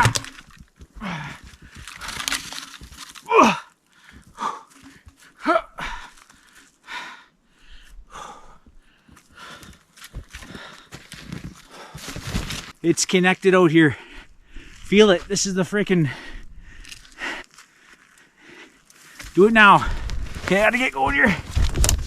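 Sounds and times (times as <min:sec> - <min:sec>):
man panting hard: 0:01.0 - 0:01.8, 0:03.5 - 0:09.8, 0:16.0 - 0:17.5
man grunting: 0:03.3 - 0:03.7.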